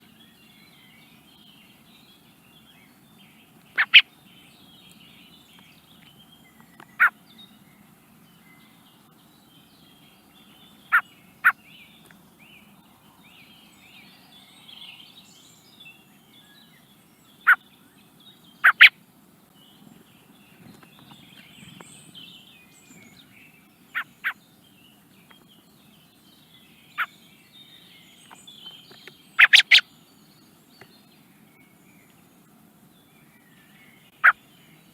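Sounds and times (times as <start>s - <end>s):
faint bird twittering: 0.0s - 34.9s
bird giving sharp calls: 3.7s - 4.1s, 7.0s - 7.2s, 18.6s - 18.9s, 29.4s - 29.8s, 34.2s - 34.4s.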